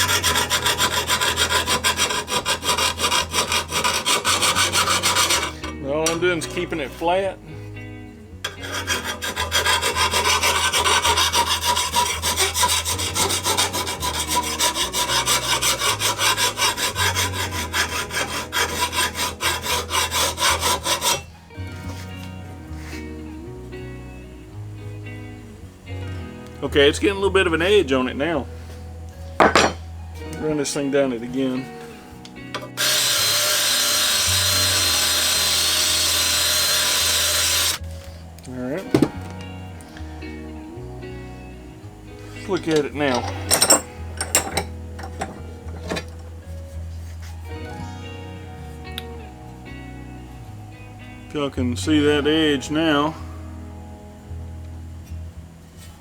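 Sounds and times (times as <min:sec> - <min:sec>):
drill-powered stone grinding steel blade: 0:00.0 - 0:07.1, 0:08.5 - 0:22.2, 0:32.6 - 0:37.9, 0:42.4 - 0:46.3.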